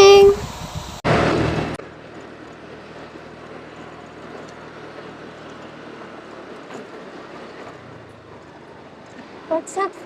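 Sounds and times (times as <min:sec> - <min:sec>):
steady outdoor rushing noise: 0:00.0 - 0:10.0.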